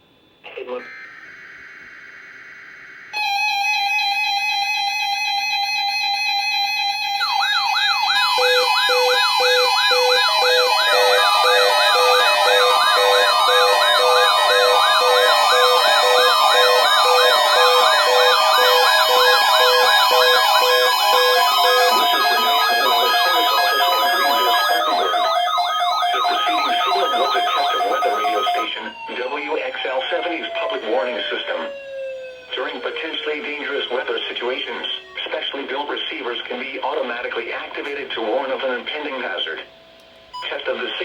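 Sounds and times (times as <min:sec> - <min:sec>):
fast warbling siren: 0:00.8 - 0:35.7
steady alarm tone: 0:00.8 - 0:36.3
repeated beeping: 0:07.2 - 0:28.7.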